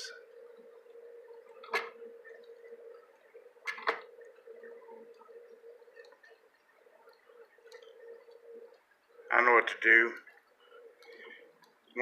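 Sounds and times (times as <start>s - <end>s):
steady machine hum: 0.0s - 12.0s.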